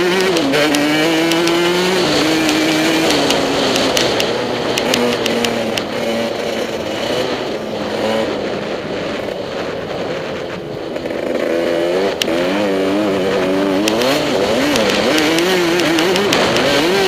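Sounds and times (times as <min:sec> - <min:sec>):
motocross bike engine revving: 0:00.0 - 0:10.2, 0:10.8 - 0:17.0
sharp click: 0:00.1 - 0:01.6, 0:02.4 - 0:05.9, 0:13.8 - 0:14.1, 0:14.7 - 0:16.8.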